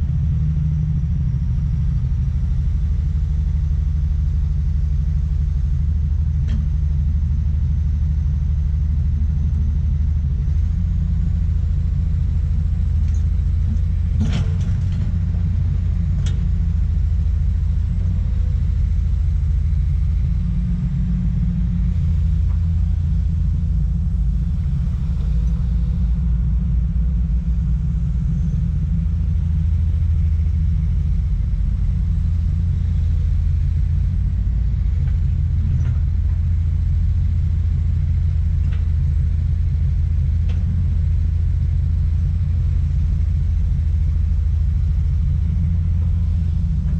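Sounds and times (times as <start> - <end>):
excavator diesel engine running: 0.0 - 46.9.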